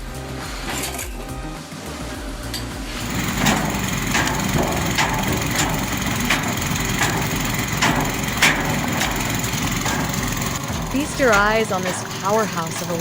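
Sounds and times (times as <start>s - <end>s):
wood-processing machine running: 3.0s - 13.0s.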